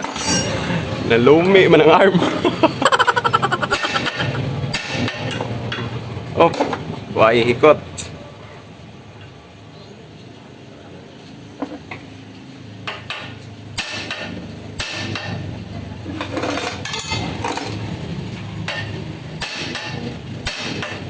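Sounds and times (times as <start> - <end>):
hammer striking metal: 0.0 - 1.0, 13.1 - 15.4, 18.7 - 21.0
tool clatter: 0.0 - 1.0
metal scraping: 0.0 - 1.2.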